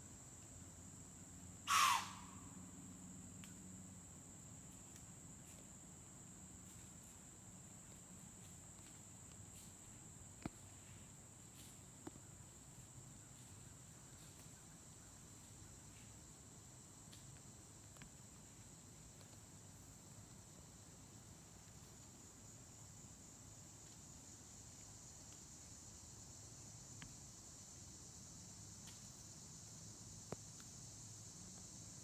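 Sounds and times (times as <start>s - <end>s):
insects trilling: 0.0s - 32.0s
harsh animal call: 1.7s - 2.3s.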